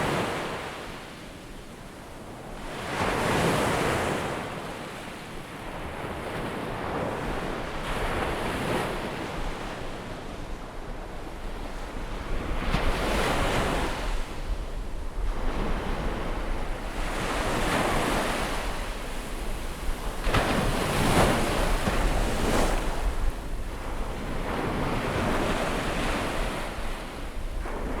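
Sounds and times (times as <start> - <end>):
ocean waves breaking: 12.2 - 28.0.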